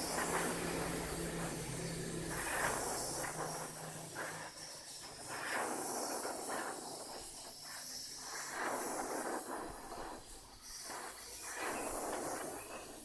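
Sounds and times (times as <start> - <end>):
machine hissing in surges: 0.0 - 13.0.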